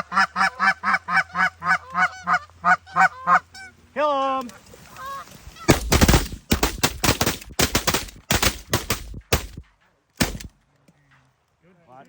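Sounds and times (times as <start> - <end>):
shotguns firing: 5.7 - 10.6.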